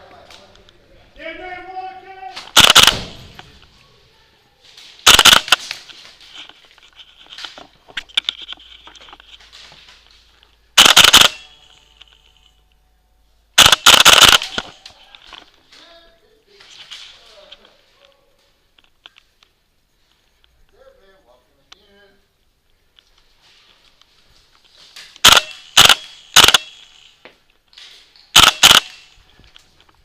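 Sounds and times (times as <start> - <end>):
airsoft gun bursts echoing: 2.5 - 3.3, 5.0 - 5.7, 10.8 - 11.6, 13.6 - 14.6, 25.2 - 27.1, 28.4 - 29.2.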